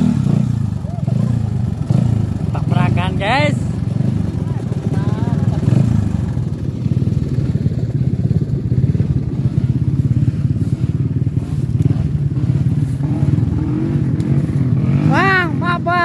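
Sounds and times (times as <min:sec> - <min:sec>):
motorcycle engine running: 0:00.0 - 0:16.0.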